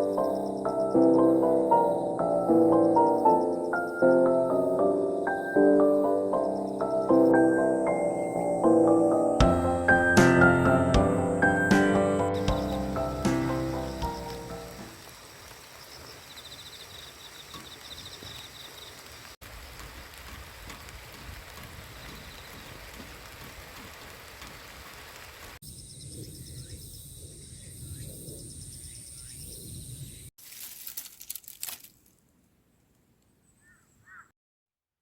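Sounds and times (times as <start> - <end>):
insects trilling: 0.0 - 9.1, 12.4 - 19.4, 25.6 - 30.3
steady hiss: 11.4 - 25.6.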